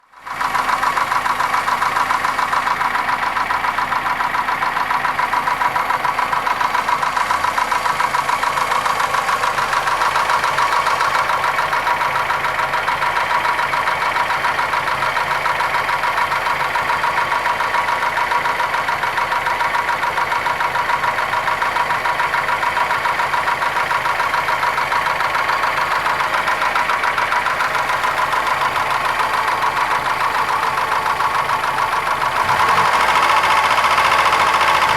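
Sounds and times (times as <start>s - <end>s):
engine knocking: 0.0s - 34.9s
petrol engine running: 0.2s - 34.9s.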